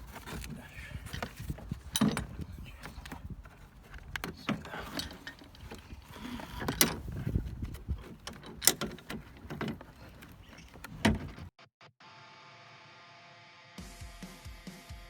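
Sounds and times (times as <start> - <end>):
car trim clicks and knocks: 0.0 - 11.5.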